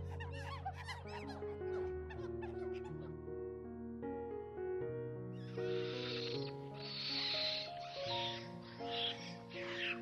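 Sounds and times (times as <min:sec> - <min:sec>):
animal squeaks: 0:00.0 - 0:03.0, 0:05.4 - 0:10.0
sustained background music: 0:00.0 - 0:10.0.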